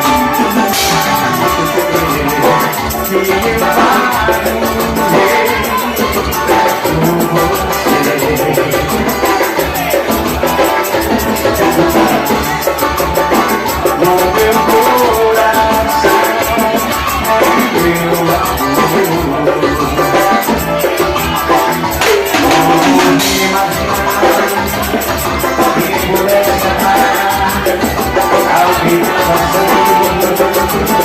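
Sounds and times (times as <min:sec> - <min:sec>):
melody lines: 0:00.0 - 0:09.0
drums and percussion beat: 0:00.0 - 0:31.0.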